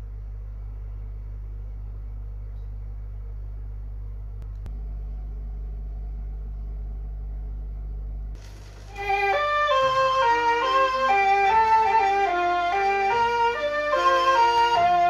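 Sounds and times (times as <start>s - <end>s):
vinyl record hum: 0.0s - 15.0s
sharp clicks: 4.4s - 4.8s.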